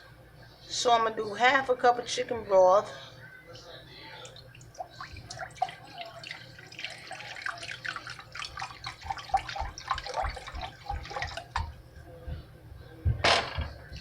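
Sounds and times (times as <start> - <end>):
liquid pouring and gurgling: 4.2 - 11.8.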